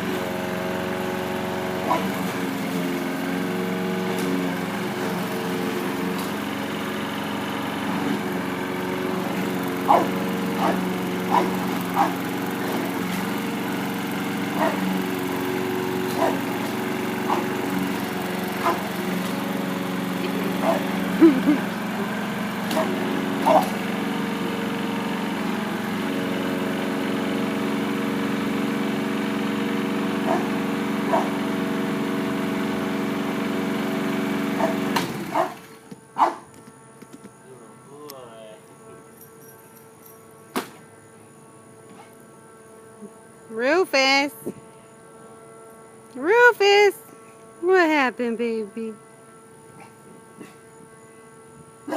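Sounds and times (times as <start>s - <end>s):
lawnmower engine running: 0.0s - 51.9s
dog barking: 1.8s - 2.1s, 9.9s - 12.2s, 14.6s - 14.8s, 16.1s - 16.4s, 17.3s - 17.5s, 18.6s - 18.9s, 20.6s - 20.9s, 22.7s - 23.7s, 30.2s - 30.5s, 31.1s - 31.3s, 34.6s - 35.6s, 36.2s - 36.4s.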